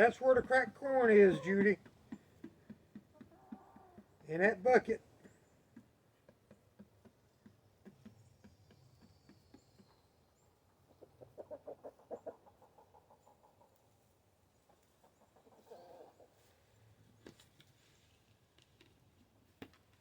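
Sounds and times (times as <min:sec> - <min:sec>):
chickens clucking: 0:00.0 - 0:10.0, 0:10.6 - 0:16.6.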